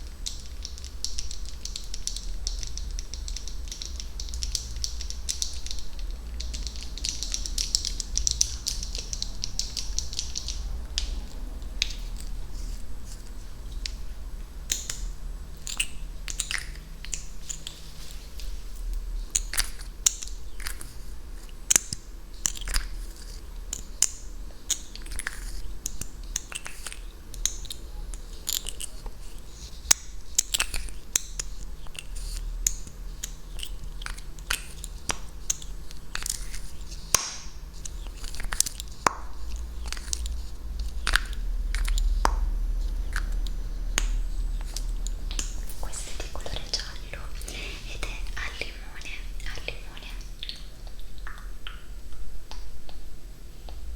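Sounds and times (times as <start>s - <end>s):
wet mouth clicks and smacks: 43.0s - 51.8s.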